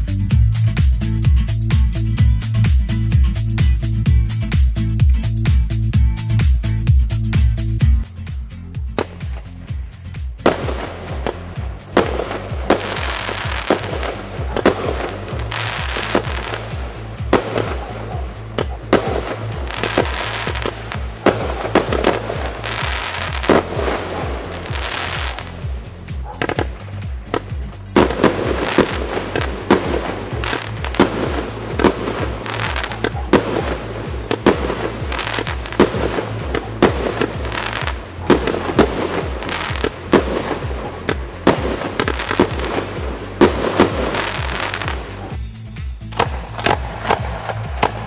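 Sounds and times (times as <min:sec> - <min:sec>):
firework crackle and echo: 0:00.0 - 0:48.0
music with stepping bass line: 0:00.0 - 0:48.0
firework shells bursting: 0:10.3 - 0:45.4.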